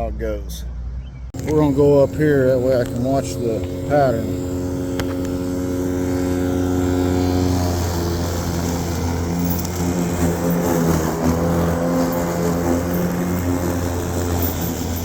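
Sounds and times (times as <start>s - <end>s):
electric lawnmower humming: 1.4s - 15.0s.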